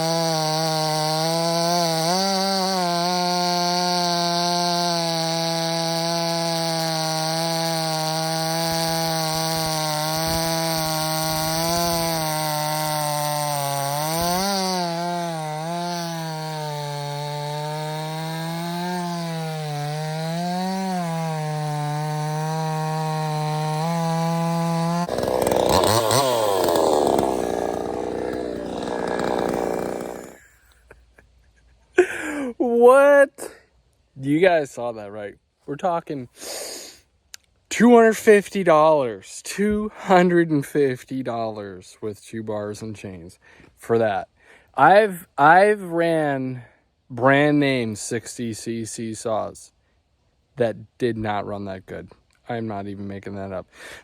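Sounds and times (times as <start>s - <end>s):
chainsaw cutting wood: 0.0s - 30.6s.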